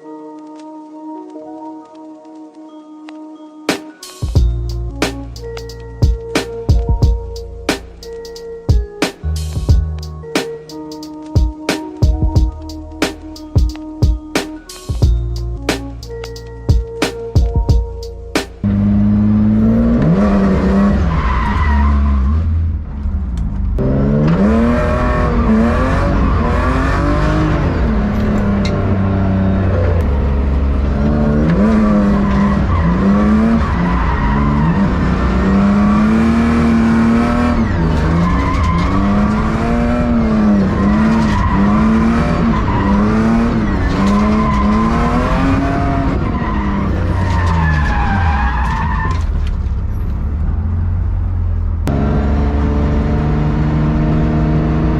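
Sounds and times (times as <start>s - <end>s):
loud engine revving: 18.6s - 21.2s, 23.8s - 47.8s, 51.8s - 54.9s
tires skidding and squealing: 18.6s - 22.8s, 24.0s - 50.8s.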